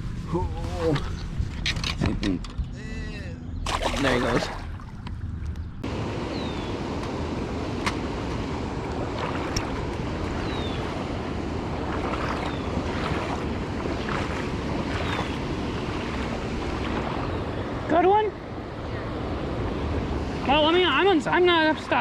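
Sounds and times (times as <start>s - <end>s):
wind on microphone: 0.0s - 6.9s, 7.6s - 17.9s
river water rushing: 3.7s - 4.9s, 5.8s - 22.0s.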